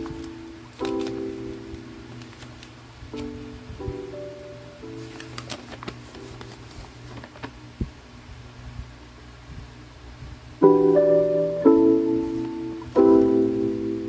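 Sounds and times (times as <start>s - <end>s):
chill-beat music: 0.0s - 6.9s
piano chords: 0.0s - 7.4s, 10.6s - 14.0s.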